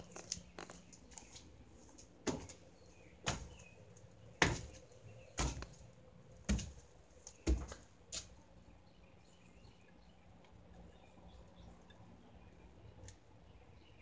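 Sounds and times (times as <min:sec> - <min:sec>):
footsteps on wooden boards: 0:00.0 - 0:08.4.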